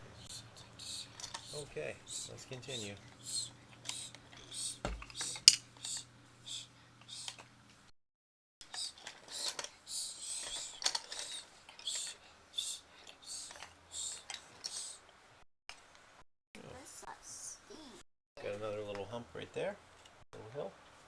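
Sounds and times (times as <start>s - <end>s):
wooden toy track pieces clicking: 8.7s - 12.2s.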